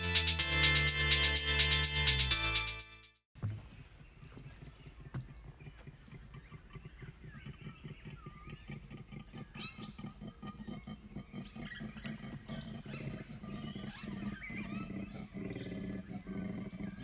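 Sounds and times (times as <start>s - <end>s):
small birds chirping: 3.4s - 17.0s.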